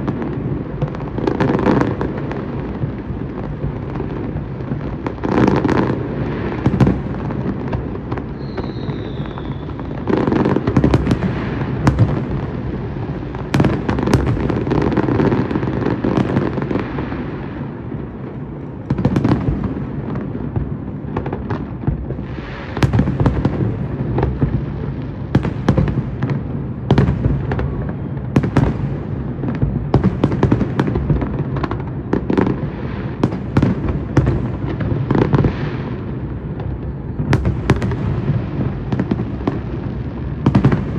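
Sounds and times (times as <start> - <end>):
fireworks bangs and crackles: 0.0 - 40.9
high firework whistle: 8.2 - 12.2.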